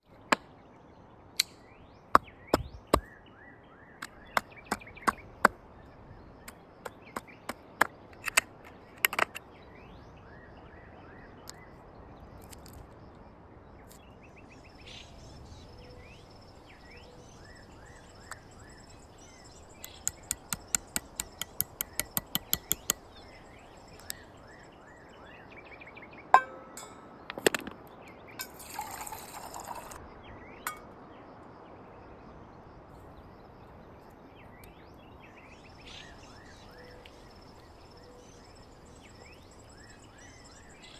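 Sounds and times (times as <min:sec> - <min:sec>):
faint bird chirps: 0:00.1 - 0:27.3, 0:27.9 - 0:40.9
sharp clicks and knocks: 0:07.5 - 0:09.4, 0:19.8 - 0:23.0, 0:26.4 - 0:27.8.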